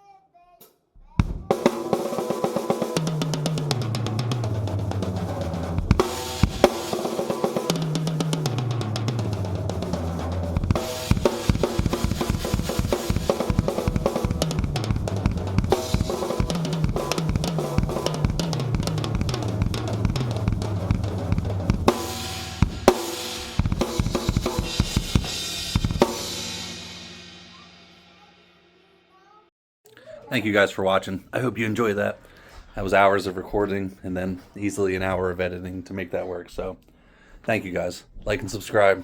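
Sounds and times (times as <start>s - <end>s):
drum kit playing fast: 1.2s - 28.4s.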